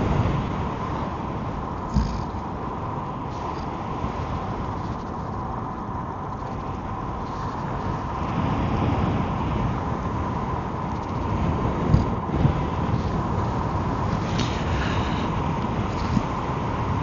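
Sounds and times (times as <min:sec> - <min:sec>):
wind rumbling on microphone: 0:00.0 - 0:17.0.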